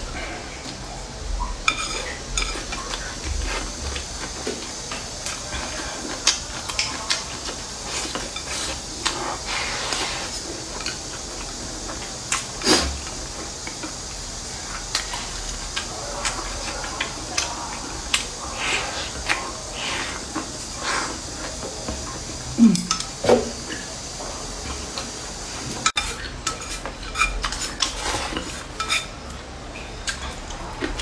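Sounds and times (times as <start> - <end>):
steady hiss: 0.0 - 30.6
chopsticks clinking against bowls: 1.6 - 3.6, 22.7 - 23.2, 25.8 - 31.0.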